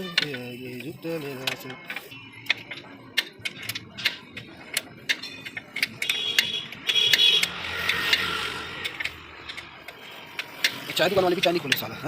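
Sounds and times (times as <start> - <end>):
hand tools clinking on metal: 0.0 - 6.1
noisy rush: 1.7 - 12.0.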